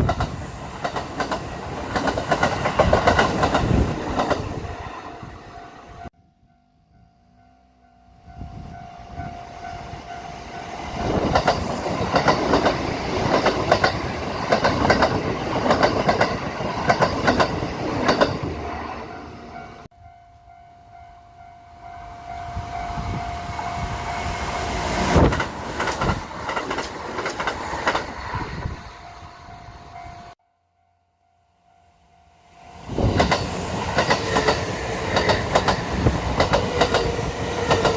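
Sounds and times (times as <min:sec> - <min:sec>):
train wheels clacking over joints: 0:11.1 - 0:18.5, 0:33.2 - 0:37.9.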